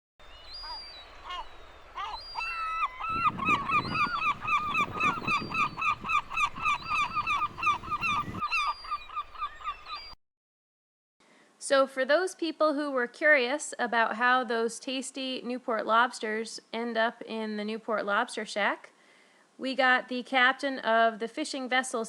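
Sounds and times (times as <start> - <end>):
gull calling: 0.2 - 10.2.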